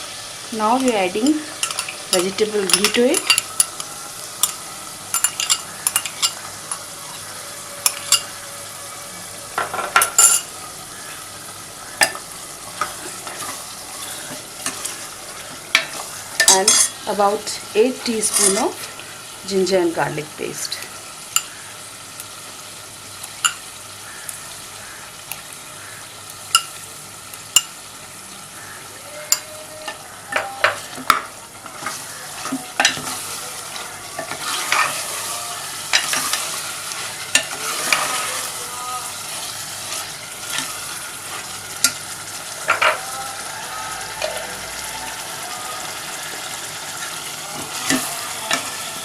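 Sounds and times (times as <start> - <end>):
meat frying in oil: 0.0 - 49.0
spoon stirring and knocking on pot: 15.6 - 17.0, 29.3 - 35.1.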